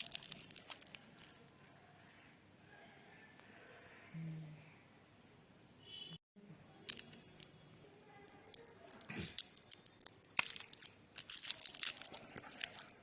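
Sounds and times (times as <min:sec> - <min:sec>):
packaging crinkling and tearing: 0:00.0 - 0:01.4, 0:08.2 - 0:13.0.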